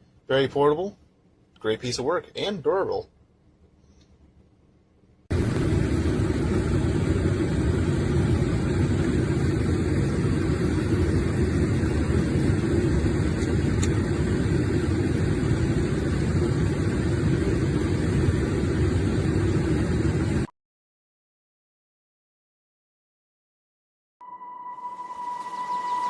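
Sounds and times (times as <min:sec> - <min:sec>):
steady machine running: 0:05.3 - 0:20.5.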